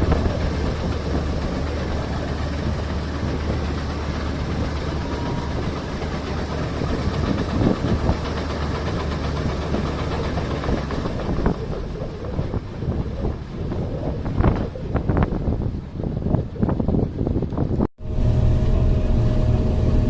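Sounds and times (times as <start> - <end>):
farm machinery engine humming: 0.0 - 12.3, 18.0 - 20.0
irregular rumbling: 0.0 - 20.0.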